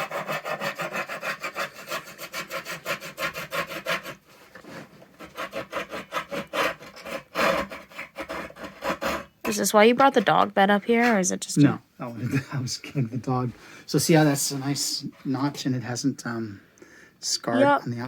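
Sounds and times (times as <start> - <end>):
handsaw cutting wood: 0.0 - 9.4.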